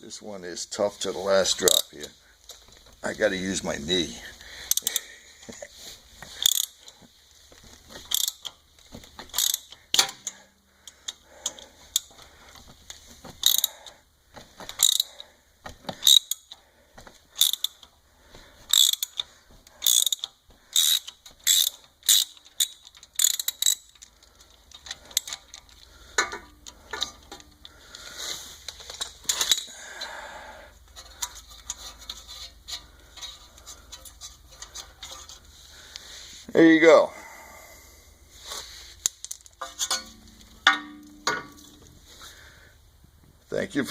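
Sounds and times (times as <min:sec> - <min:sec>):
ratchet wrench clicking: 0:04.7 - 0:05.0, 0:06.4 - 0:06.8, 0:08.1 - 0:08.6, 0:09.3 - 0:10.4, 0:11.1 - 0:12.1, 0:13.4 - 0:13.8, 0:14.7 - 0:15.2, 0:16.0 - 0:16.6, 0:17.4 - 0:17.9, 0:18.7 - 0:27.5.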